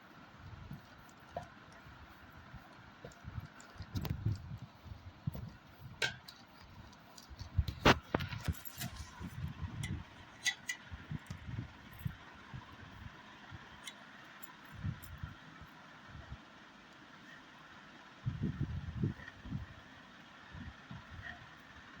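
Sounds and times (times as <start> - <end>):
objects being handled: 5.3 - 10.9.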